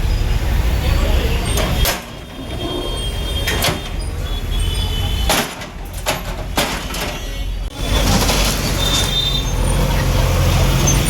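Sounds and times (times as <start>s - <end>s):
sharp knocks and scrapes: 1.5s - 4.0s.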